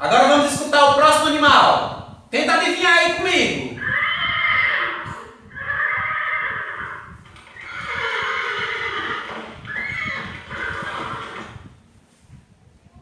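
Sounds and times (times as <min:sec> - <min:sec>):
horse whinnying: 0:03.8 - 0:11.7.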